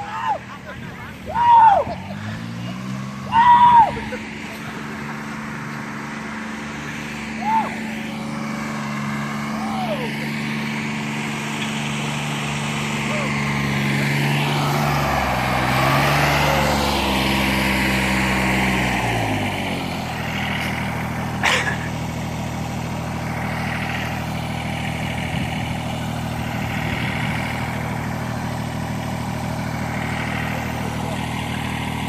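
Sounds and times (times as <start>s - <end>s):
engine idling: 0.0s - 32.0s.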